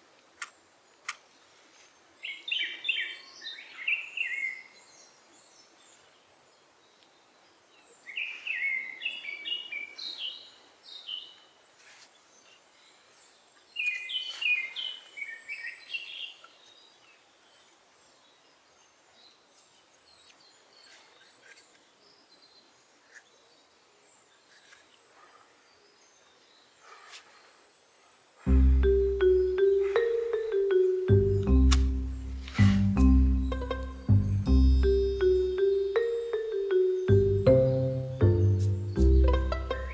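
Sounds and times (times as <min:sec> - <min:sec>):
songbird chirping: 0:28.5 - 0:39.9.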